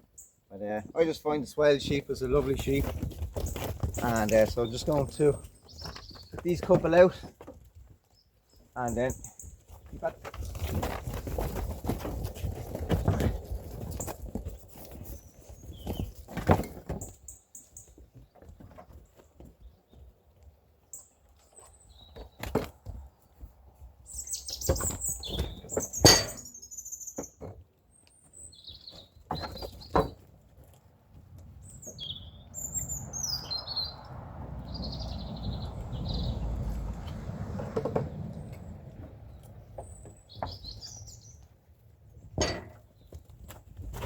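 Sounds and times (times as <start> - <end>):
small birds chirping: 0.0 - 30.6, 31.4 - 37.0, 38.4 - 43.9
sharp knocks and clatters: 24.5 - 26.6, 28.9 - 30.7, 42.2 - 44.0.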